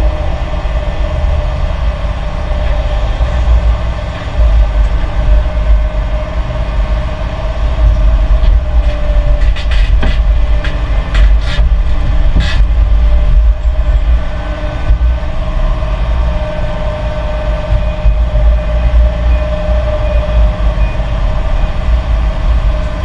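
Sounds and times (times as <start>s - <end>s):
excavator diesel engine rumbling: 0.0s - 23.0s
steady whine: 0.0s - 23.0s
sharp knocks: 7.9s - 13.9s.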